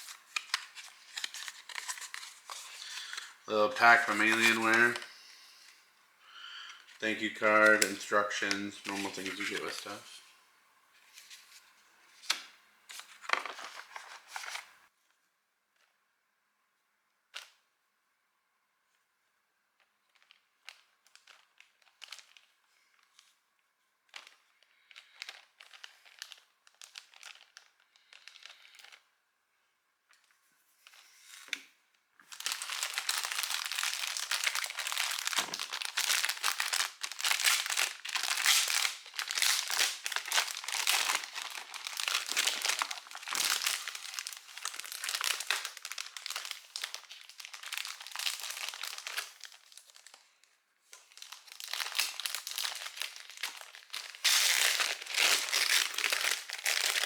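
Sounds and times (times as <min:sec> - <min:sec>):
packaging wrapper crinkling: 0:00.0 - 0:05.2, 0:06.6 - 0:10.2, 0:12.2 - 0:14.8, 0:20.1 - 0:23.3, 0:24.1 - 0:29.0, 0:32.2 - 0:50.3, 0:50.9 - 0:57.0.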